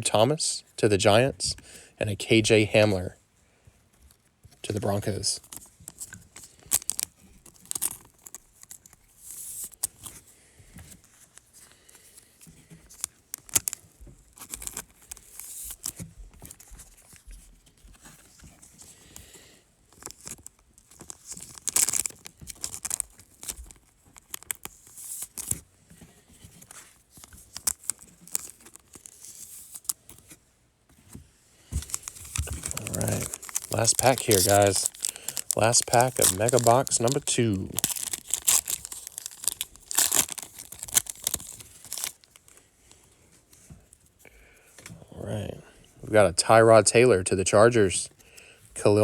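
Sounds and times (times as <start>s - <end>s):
cards being handled: 3.9s - 44.0s
card pack wrappers crinkling: 4.6s - 17.2s, 17.8s - 30.4s, 31.6s - 42.6s.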